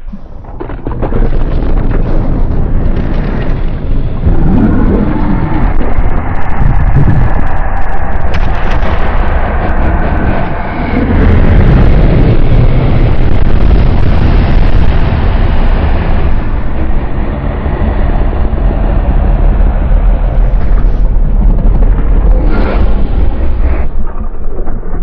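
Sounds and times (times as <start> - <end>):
sharp crack: 0.0 - 17.2
rumbling crackling monster blast: 0.0 - 25.0.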